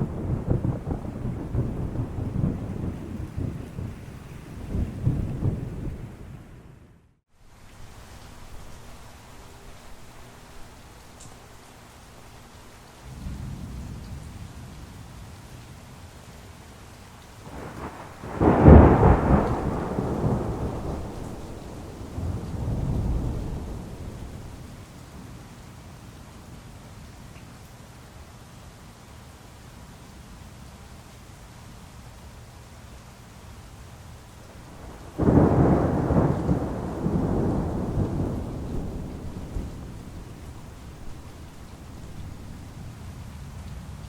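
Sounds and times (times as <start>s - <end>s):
thunder crack and rumble: 0.0s - 6.7s, 17.4s - 24.9s, 34.5s - 43.9s
rain hissing: 7.3s - 14.8s, 16.8s - 25.3s, 33.8s - 44.0s.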